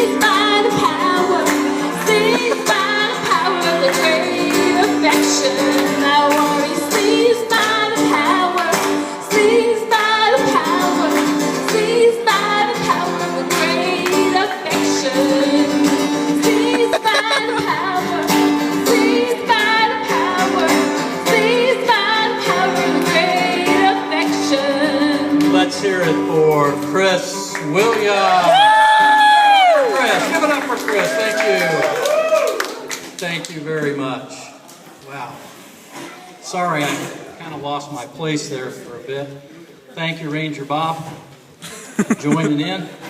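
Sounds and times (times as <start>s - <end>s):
worship song singing: 0.0s - 7.7s, 9.2s - 25.4s
held backing chords: 0.0s - 26.9s.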